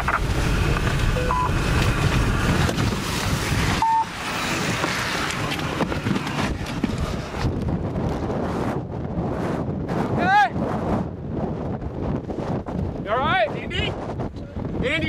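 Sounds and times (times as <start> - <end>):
wind buffeting microphone: 0.0 - 15.0
short electronic beep: 1.2 - 1.5, 3.8 - 4.1.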